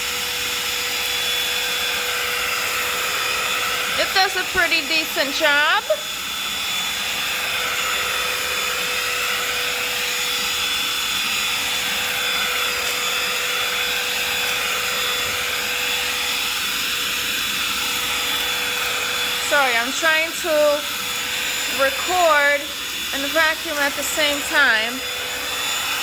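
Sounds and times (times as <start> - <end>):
handheld vacuum cleaner running: 0.0 - 26.0.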